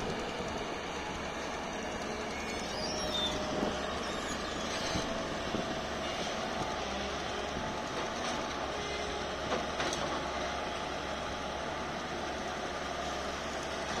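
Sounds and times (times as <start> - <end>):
heavy machinery rumbling: 0.0 - 14.0.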